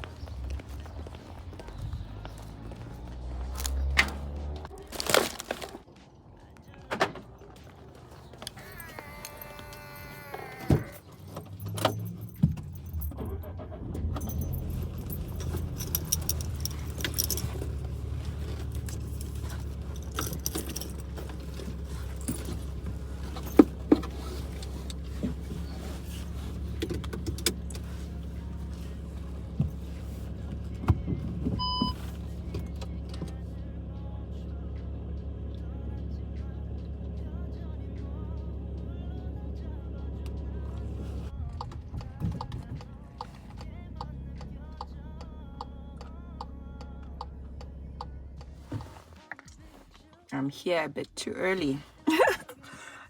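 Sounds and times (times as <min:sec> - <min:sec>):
car engine humming: 0:00.0 - 0:53.0
keys jangling: 0:08.4 - 0:25.2.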